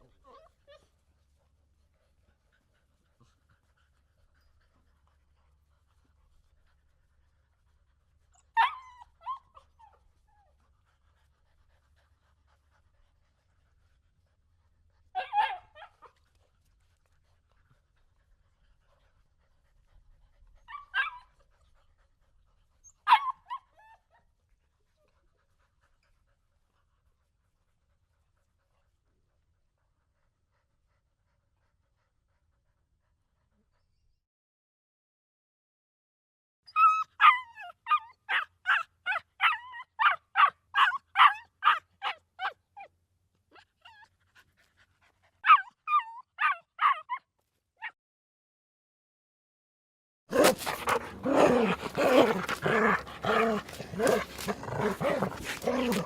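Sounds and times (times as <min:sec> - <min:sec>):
dog calls: 0:50.3 - 0:56.0.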